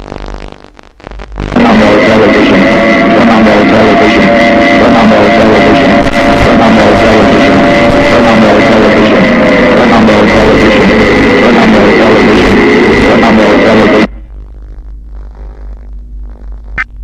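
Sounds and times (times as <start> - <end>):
distorted guitar-like music: 0.0 - 17.0
steady high tone: 1.5 - 14.3.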